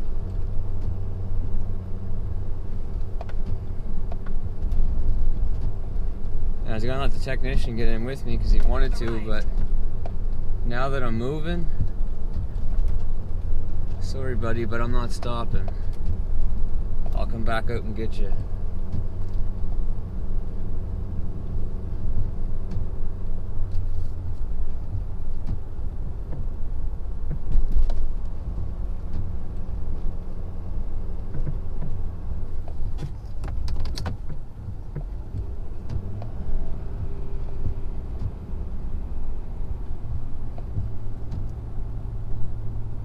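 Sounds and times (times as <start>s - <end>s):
diesel truck engine under load: 0.0s - 43.0s
sharp clicks or knocks: 32.6s - 38.4s.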